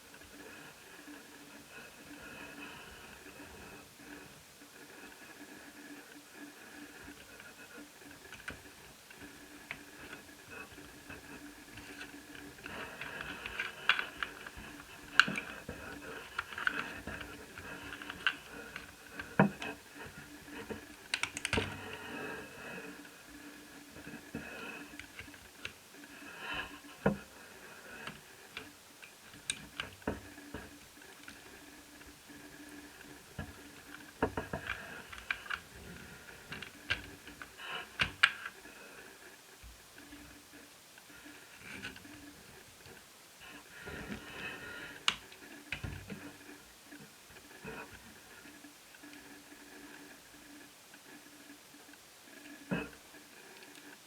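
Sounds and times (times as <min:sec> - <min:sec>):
small parts clicking and tapping: 0:08.2 - 0:22.0, 0:28.0 - 0:38.7.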